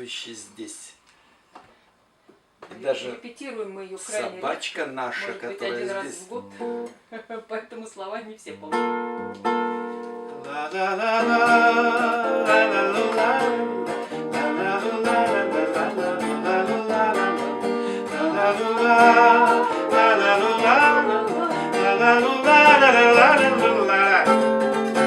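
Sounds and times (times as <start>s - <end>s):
acoustic guitar strumming: 5.2s - 7.0s, 8.6s - 25.0s
person singing: 10.4s - 25.0s.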